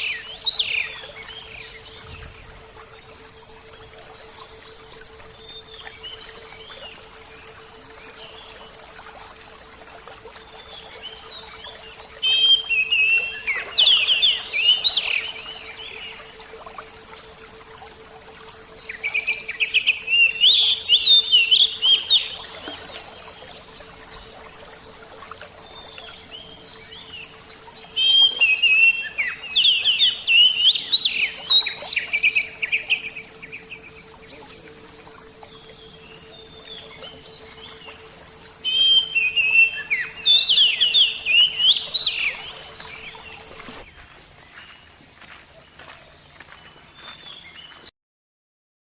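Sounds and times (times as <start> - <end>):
songbird chirping and whistling: 0.0 - 1.9, 11.2 - 16.1, 18.8 - 23.1, 25.8 - 34.7, 35.5 - 43.4.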